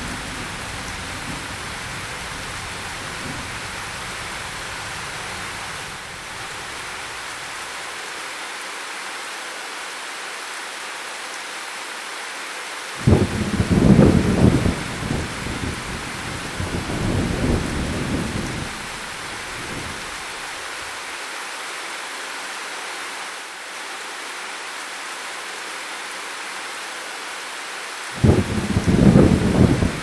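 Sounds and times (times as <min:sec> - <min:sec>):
thunder rumbling: 0:00.0 - 0:07.4, 0:13.0 - 0:20.6, 0:28.2 - 0:30.0
heavy rain: 0:00.0 - 0:30.0.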